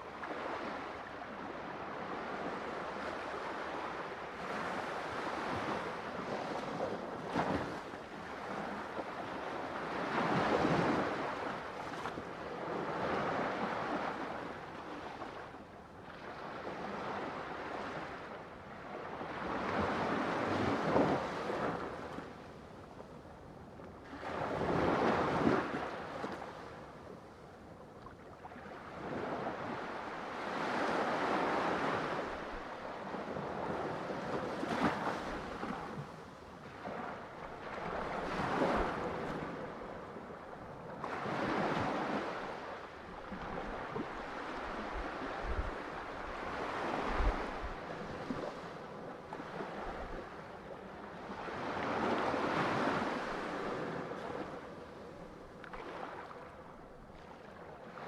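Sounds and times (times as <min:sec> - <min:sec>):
ocean waves breaking: 0:28.7 - 0:50.5, 0:51.4 - 0:58.0.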